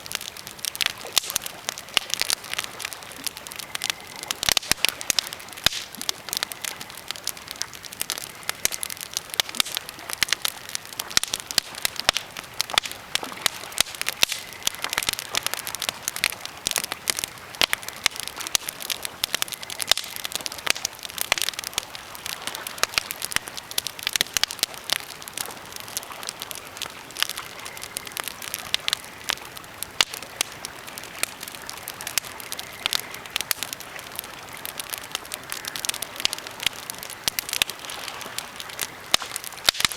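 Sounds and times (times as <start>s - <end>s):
campfire crackling and popping: 0.0s - 39.9s.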